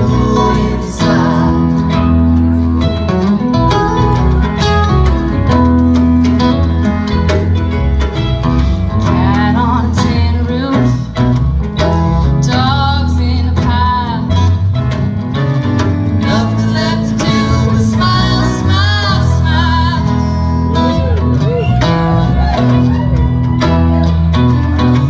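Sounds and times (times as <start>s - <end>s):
person singing: 0.0s - 2.3s, 8.9s - 11.2s, 16.2s - 25.0s
bass guitar: 0.0s - 25.0s
drums: 0.0s - 25.0s
electric guitars: 0.0s - 25.0s.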